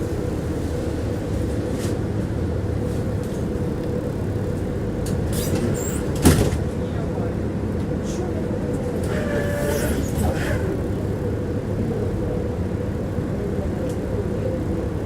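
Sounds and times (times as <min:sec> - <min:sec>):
steady hum: 0:00.0 - 0:06.2
tram rumble: 0:00.0 - 0:15.0.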